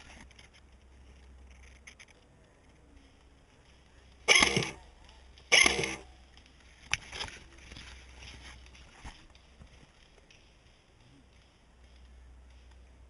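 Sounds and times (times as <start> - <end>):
airsoft gun shots: 4.3 - 4.8, 5.5 - 6.0.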